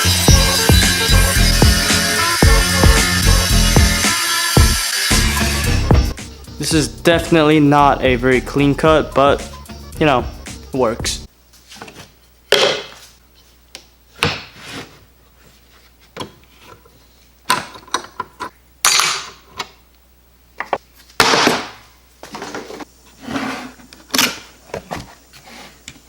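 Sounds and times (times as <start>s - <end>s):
tools and boards knocking on workbench: 11.8s - 13.0s, 20.6s - 22.8s.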